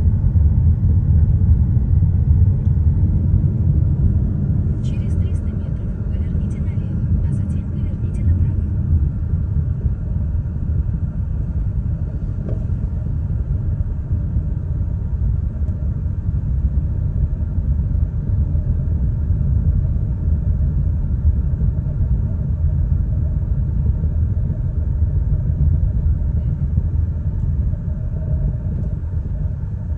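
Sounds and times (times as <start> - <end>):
car road and tyre rumble: 0.0 - 29.9.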